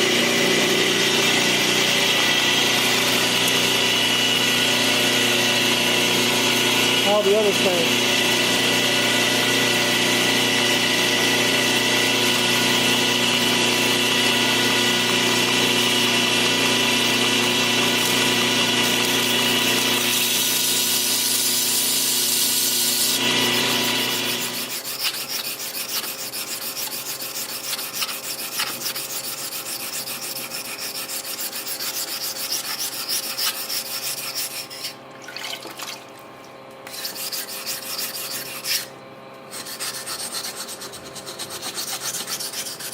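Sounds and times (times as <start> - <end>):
grinding tool motor: 0.0 - 35.0, 36.9 - 38.9, 39.5 - 42.9
knife blade rubbing strokes: 23.8 - 35.0, 36.9 - 38.9, 39.5 - 42.9.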